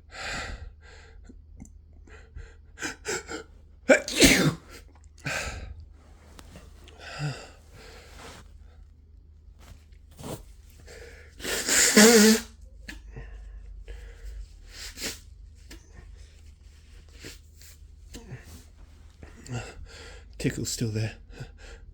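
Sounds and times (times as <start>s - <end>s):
person sneezing: 3.9s - 5.4s, 11.4s - 12.5s
catching breaths: 5.2s - 8.5s.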